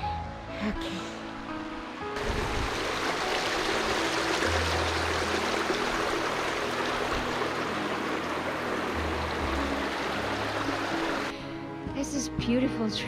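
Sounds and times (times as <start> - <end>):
creek water rushing over rocks: 2.2 - 11.3.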